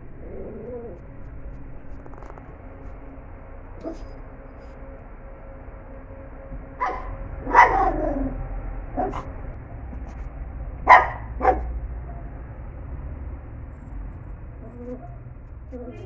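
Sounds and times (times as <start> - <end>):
dog barking: 3.8 - 4.2, 6.8 - 8.4, 9.0 - 9.4, 10.8 - 12.4, 14.8 - 15.2.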